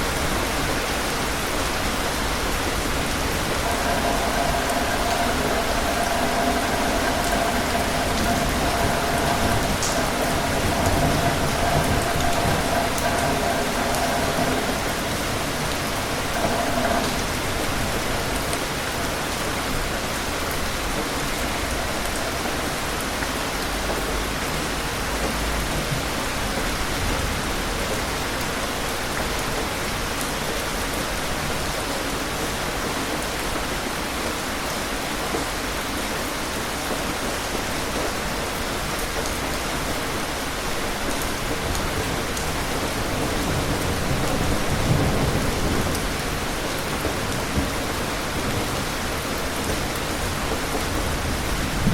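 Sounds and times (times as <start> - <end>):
steady rain falling: 0.0 - 51.9
distant thunder rumbling: 1.6 - 19.9.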